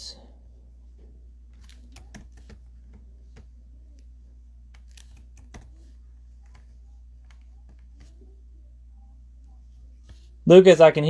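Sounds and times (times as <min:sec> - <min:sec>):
steady low hum: 0:00.0 - 0:11.0
keyboard keys clicking: 0:01.6 - 0:02.6, 0:04.7 - 0:05.8.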